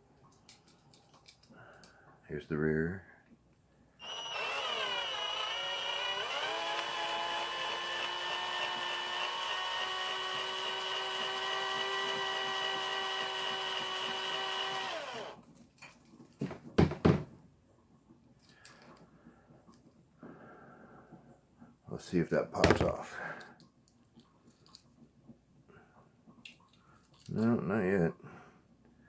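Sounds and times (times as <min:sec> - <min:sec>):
electric drill whining: 0:04.0 - 0:15.4.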